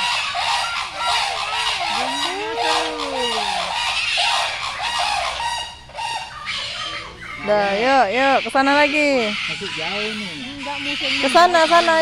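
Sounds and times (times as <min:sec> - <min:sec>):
bird call gliding up and falling: 0:00.0 - 0:06.7
birds honking: 0:00.0 - 0:12.0.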